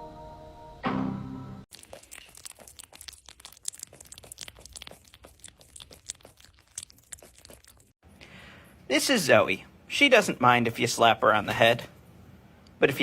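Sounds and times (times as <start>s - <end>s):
crunching and crackling: 1.7s - 8.0s.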